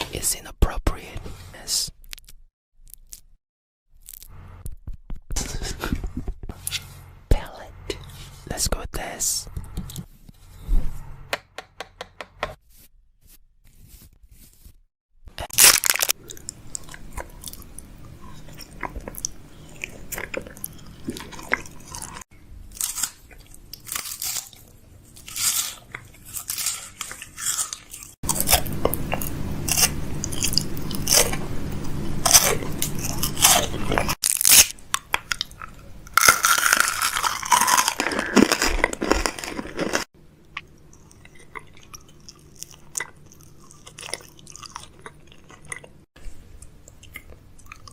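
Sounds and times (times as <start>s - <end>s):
crunching and chewing: 15.4s - 47.9s.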